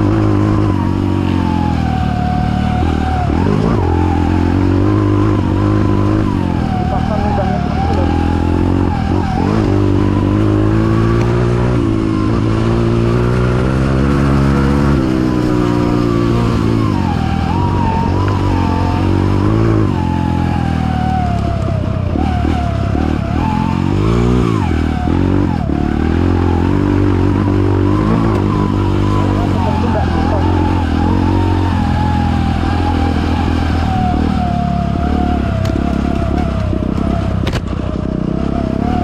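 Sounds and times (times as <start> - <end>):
motorcycle engine revving: 0.0 - 39.0
high wavering whine: 27.7 - 33.0.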